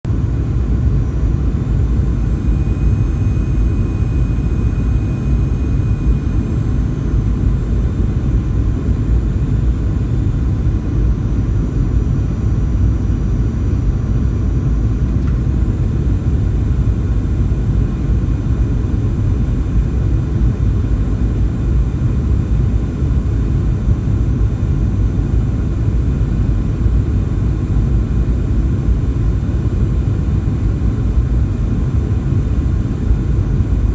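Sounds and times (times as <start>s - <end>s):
jet engine cabin rumble: 0.0s - 33.9s
faint high whines: 0.1s - 15.6s.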